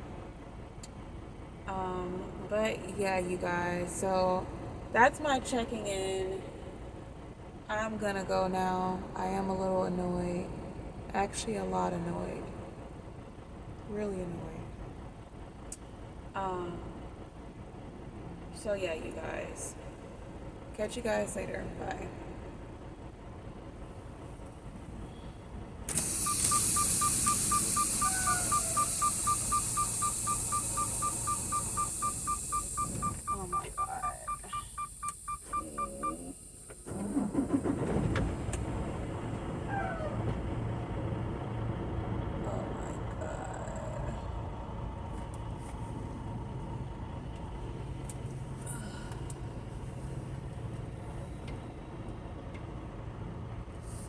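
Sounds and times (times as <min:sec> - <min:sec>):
truck engine drone: 0:00.0 - 0:54.0
road noise: 0:13.0 - 0:54.0
electronic beeper short beeps: 0:26.0 - 0:36.3.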